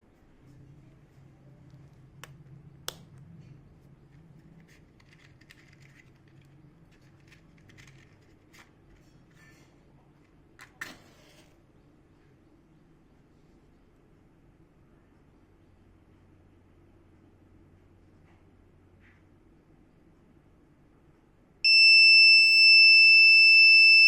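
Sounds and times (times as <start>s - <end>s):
handling noise: 4.0s - 9.6s.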